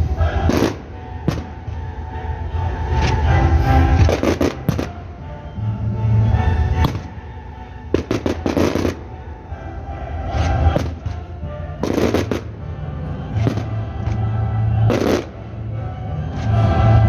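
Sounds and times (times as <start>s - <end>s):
music playing: 0.0s - 17.0s
fireworks bangs and crackles: 0.4s - 1.6s, 3.9s - 5.0s, 7.9s - 9.0s, 11.8s - 12.5s, 13.4s - 14.2s, 14.8s - 15.4s.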